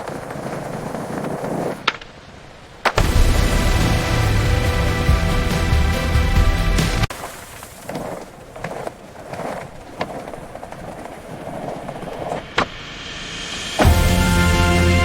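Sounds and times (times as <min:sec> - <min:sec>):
skateboard clacks: 0:00.0 - 0:03.1, 0:07.5 - 0:12.8
skateboard wheels rolling on pavement: 0:00.0 - 0:13.2
music: 0:03.0 - 0:07.1, 0:13.2 - 0:15.0.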